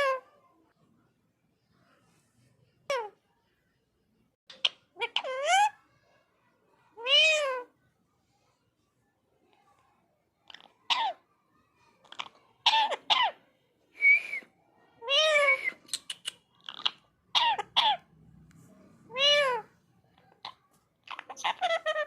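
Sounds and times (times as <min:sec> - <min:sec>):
parrot calling: 0:04.5 - 0:05.8, 0:07.0 - 0:07.7, 0:10.5 - 0:11.2, 0:12.0 - 0:13.4, 0:15.0 - 0:18.2, 0:19.1 - 0:22.0.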